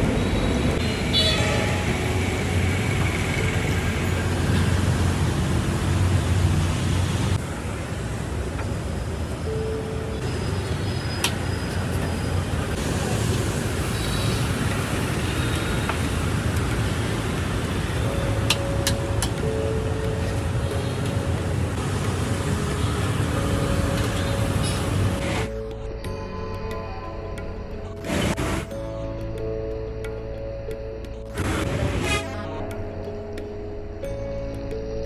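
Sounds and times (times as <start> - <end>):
low rumble of road traffic: 0.0 - 25.8.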